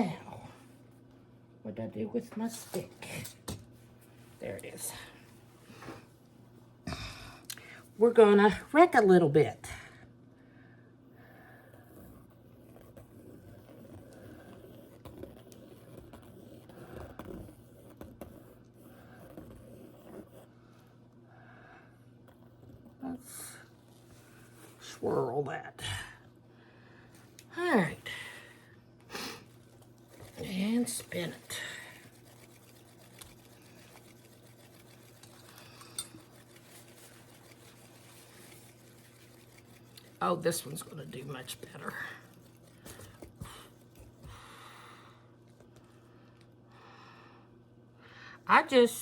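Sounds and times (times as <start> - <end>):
low steady hum: 0.0 - 49.0
stick scraping wet paint: 30.1 - 44.2.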